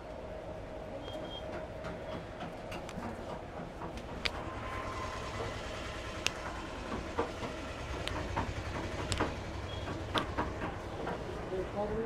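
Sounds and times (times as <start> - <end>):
sharp taps and clicks of hands: 6.2 - 11.2.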